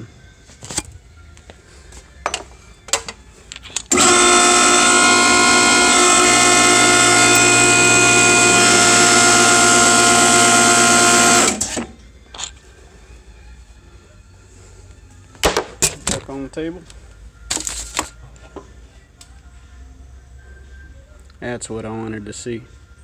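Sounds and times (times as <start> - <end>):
hose crimping machine running: 3.8 - 12.0.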